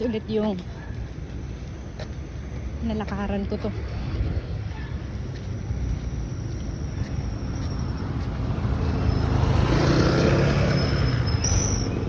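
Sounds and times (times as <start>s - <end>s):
vehicle passing on road: 3.7s - 12.0s.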